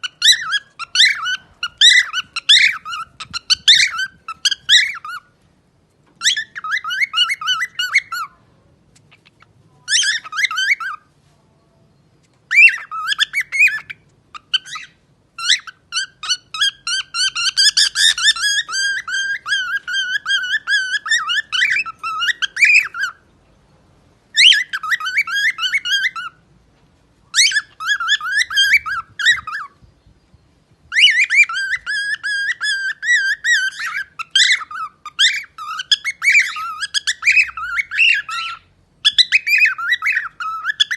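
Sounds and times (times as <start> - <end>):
parrot warbling whistles: 30.9 - 40.9.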